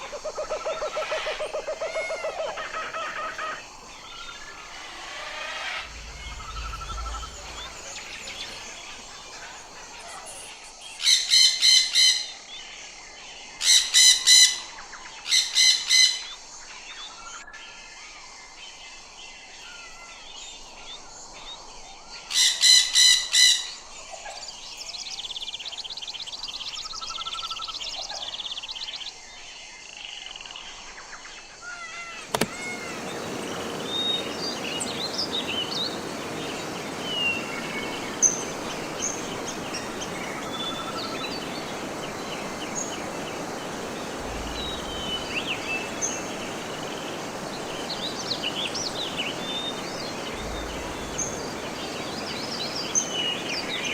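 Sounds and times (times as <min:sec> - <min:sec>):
background hiss: 0:00.0 - 0:11.6, 0:32.0 - 0:53.9.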